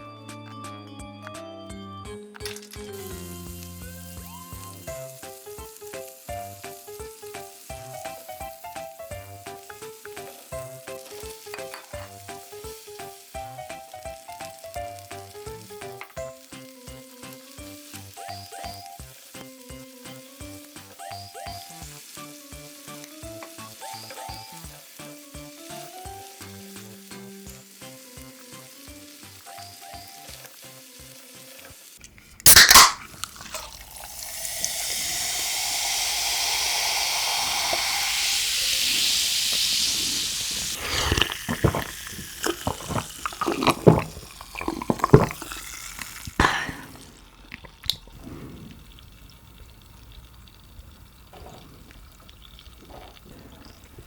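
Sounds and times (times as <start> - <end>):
light background music: 0.0 - 31.9
shrimp sizzling in a frying pan: 2.8 - 54.0
utensils tapping on pan: 8.6 - 21.9
sharp clack: 32.5 - 33.1.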